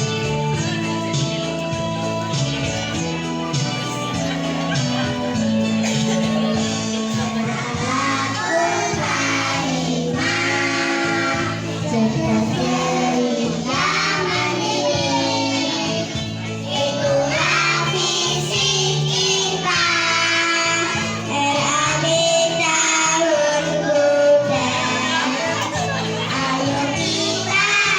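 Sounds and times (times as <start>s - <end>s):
instrumental backing music: 0.0s - 27.9s
children singing: 7.1s - 27.9s.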